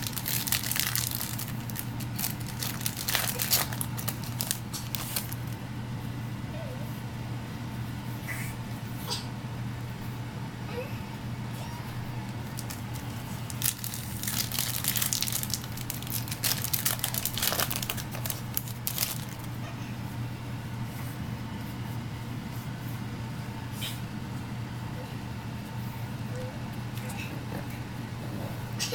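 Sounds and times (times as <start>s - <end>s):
wrappers crinkling in hands: 0.0s - 5.6s, 12.4s - 19.6s
steady low hum: 0.0s - 28.9s.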